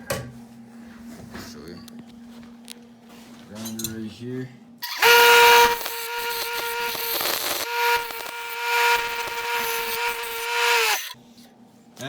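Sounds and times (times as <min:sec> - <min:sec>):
electric grinder motor whining: 0:04.8 - 0:11.2
grinding steel scraping: 0:04.8 - 0:11.2.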